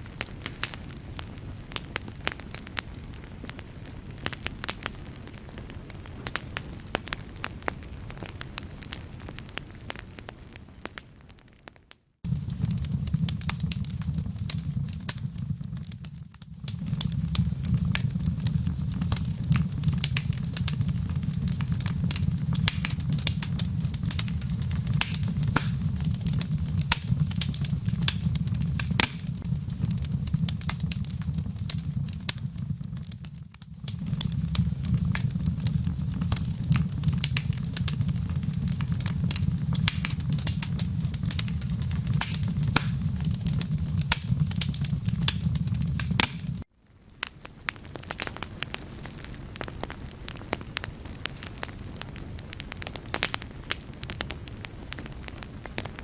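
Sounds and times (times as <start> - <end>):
wood fire crackling and popping: 0.0 - 56.0
low rumble: 12.3 - 46.6.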